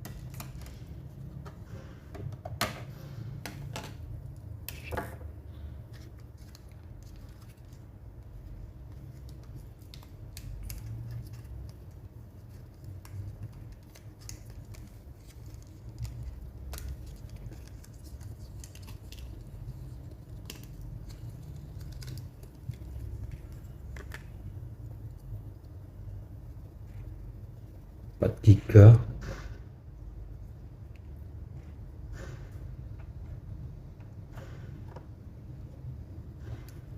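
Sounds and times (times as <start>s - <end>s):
small clicks and scrapes of handling: 0.0s - 25.8s
steady low hum: 0.0s - 36.9s.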